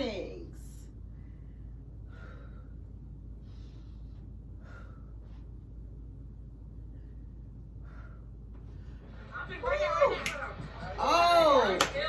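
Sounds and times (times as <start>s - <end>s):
steady low hum: 0.0s - 12.0s
person breathing hard: 1.1s - 5.6s, 6.8s - 9.0s.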